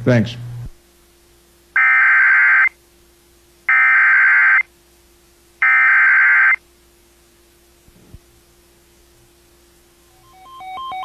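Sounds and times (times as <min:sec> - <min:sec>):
digital data tone bursts: 0:01.8 - 0:02.8, 0:03.7 - 0:04.7, 0:05.6 - 0:06.6.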